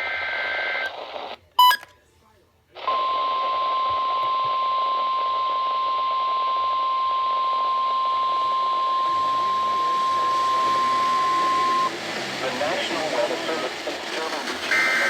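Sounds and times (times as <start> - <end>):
radio static hiss: 0.0 - 1.6, 2.7 - 15.0
steady alarm beep: 1.6 - 1.9, 8.2 - 11.9.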